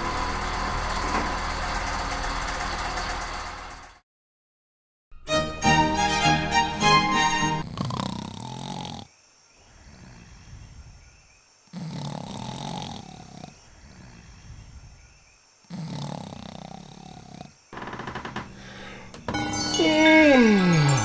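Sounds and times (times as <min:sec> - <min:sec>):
quiet breath: 0:09.6 - 0:11.4, 0:12.9 - 0:15.3, 0:18.5 - 0:19.2
person yawning: 0:19.8 - 0:21.0.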